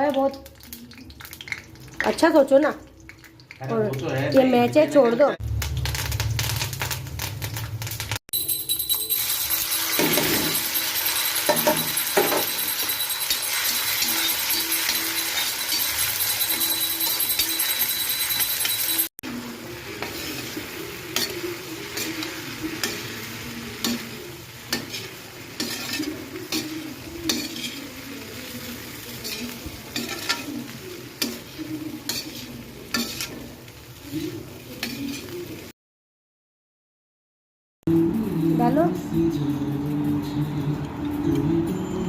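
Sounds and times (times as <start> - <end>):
food sizzling in hot oil: 0.0 - 4.6, 5.3 - 35.7
spoon stirring and scraping pan: 9.4 - 19.0, 19.8 - 35.6.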